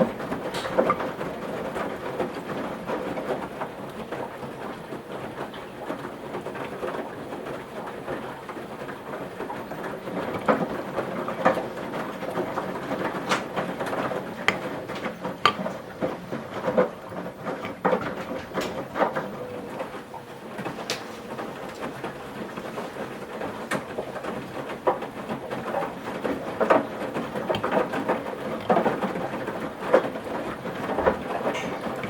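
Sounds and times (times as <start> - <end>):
laundry sloshing in washing machine: 0.0 - 32.0
sharp clicks and knocks: 12.2 - 19.3.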